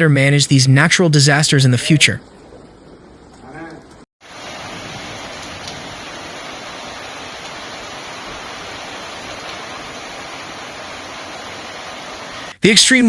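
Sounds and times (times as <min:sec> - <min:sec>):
steady hiss of water: 0:04.2 - 0:12.6.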